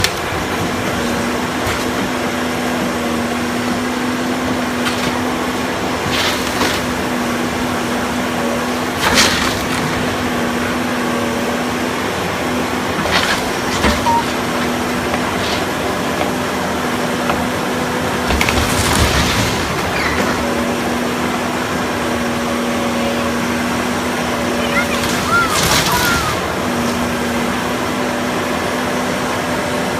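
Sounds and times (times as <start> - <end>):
demolition cracks and knocks: 18.2 - 20.4, 25.0 - 26.2.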